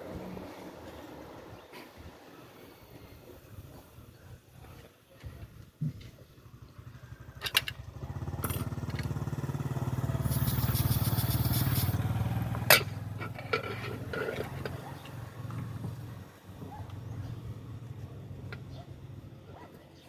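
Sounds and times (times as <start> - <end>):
vehicle engine passing: 6.8 - 19.5.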